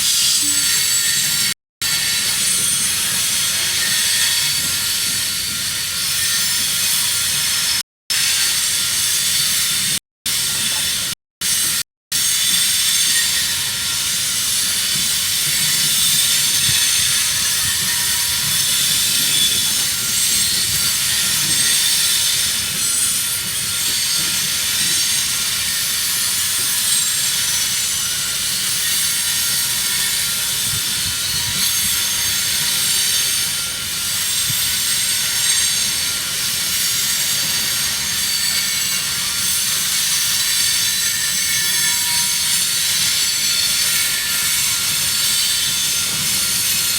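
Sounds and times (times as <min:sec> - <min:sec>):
train wheels rushing on rail: 0:12.4 - 0:46.9.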